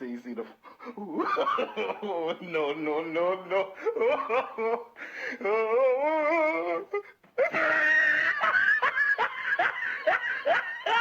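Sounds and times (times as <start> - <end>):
person laughing rhythmically: 7.5 - 11.0.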